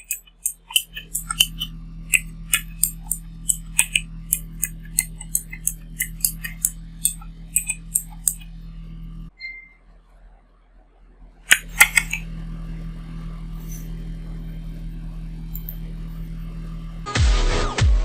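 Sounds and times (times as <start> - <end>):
sharp clicks: 0.0 - 8.6, 11.5 - 12.2
electronic music: 0.0 - 9.6, 11.5 - 18.0
steady low hum: 0.0 - 17.6.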